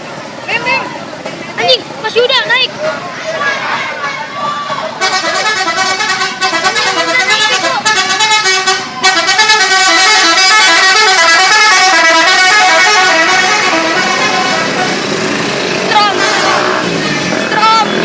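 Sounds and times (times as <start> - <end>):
multi-tone bus horn tune: 5.0 - 18.0.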